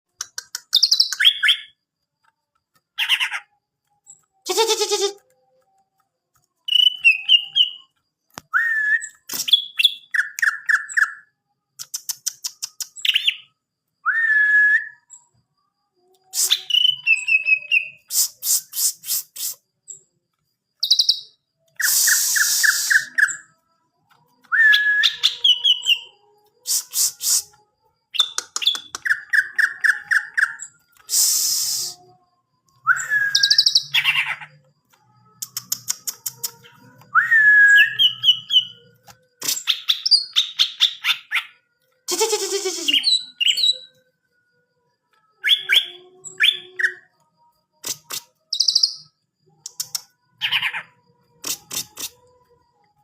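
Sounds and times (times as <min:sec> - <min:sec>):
bird singing whistles and trills: 0:00.7 - 0:01.8, 0:06.6 - 0:11.3, 0:11.9 - 0:15.4, 0:16.2 - 0:20.0, 0:20.8 - 0:23.6, 0:24.3 - 0:34.6, 0:35.4 - 0:41.6, 0:42.2 - 0:44.0, 0:45.3 - 0:47.2, 0:48.5 - 0:50.9.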